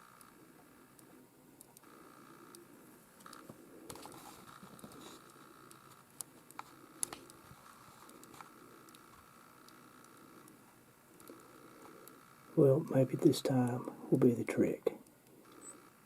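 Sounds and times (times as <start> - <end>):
faint high hum: 0.0 - 16.0.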